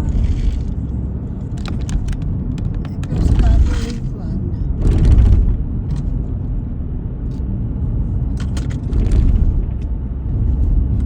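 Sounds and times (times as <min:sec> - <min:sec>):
car driving rumble: 0:00.0 - 0:11.0.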